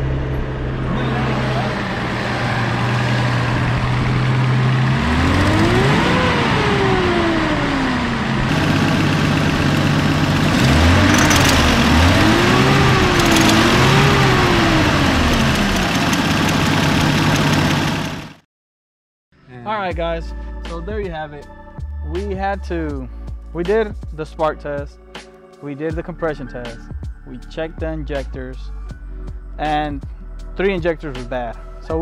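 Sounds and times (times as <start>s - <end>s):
car engine idling and revving: 0.0s - 18.4s.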